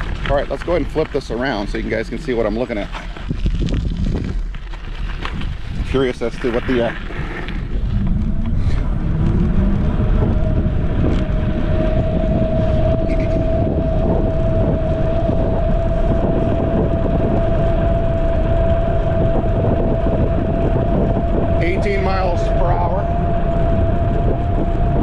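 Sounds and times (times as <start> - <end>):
heavy wind: 0.0 - 25.0
road rumble: 0.0 - 25.0
electric scooter motor whine: 6.8 - 25.0.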